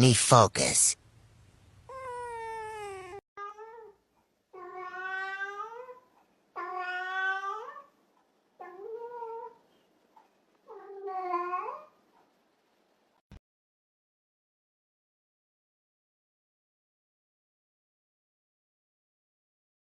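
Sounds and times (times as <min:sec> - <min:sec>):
cat meowing: 0:04.6 - 0:06.0, 0:06.6 - 0:07.9.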